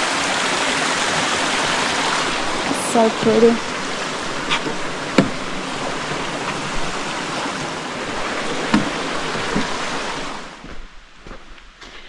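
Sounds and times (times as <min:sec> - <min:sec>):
mountain stream rushing: 0:00.0 - 0:12.0
short knocks: 0:03.2 - 0:06.9, 0:08.5 - 0:10.1.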